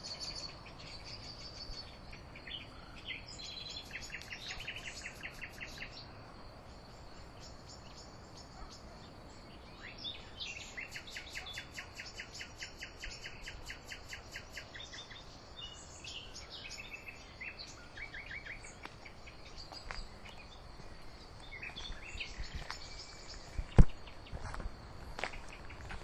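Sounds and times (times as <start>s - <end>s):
songbirds singing: 0.0s - 26.0s.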